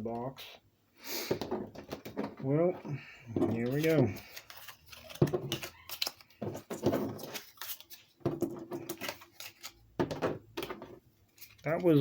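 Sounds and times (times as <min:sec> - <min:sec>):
cards and packaging rustling: 0:01.3 - 0:12.0.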